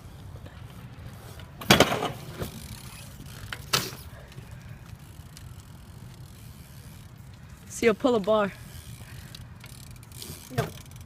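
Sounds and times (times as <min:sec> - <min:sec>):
bike clattering on steps: 0:01.6 - 0:04.5.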